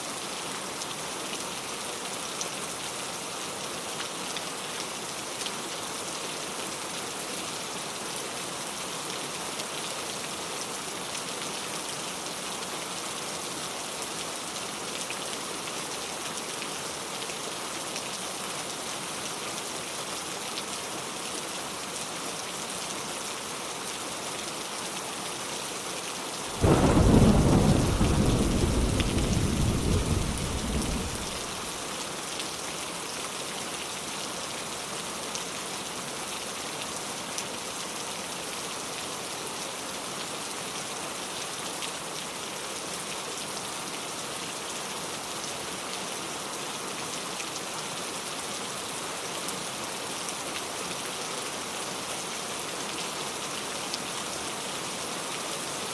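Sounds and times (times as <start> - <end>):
steady rain falling: 0.0 - 55.9
thunder clap rumbling: 26.5 - 31.7.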